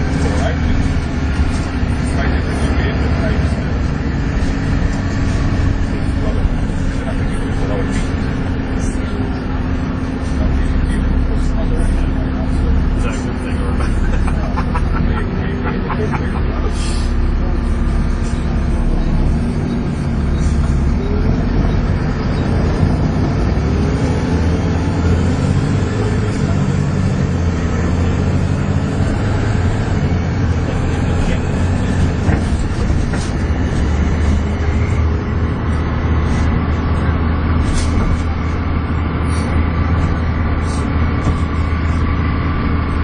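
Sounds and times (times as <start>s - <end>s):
bus diesel engine droning: 0.0s - 43.0s
high engine whine: 0.0s - 43.0s.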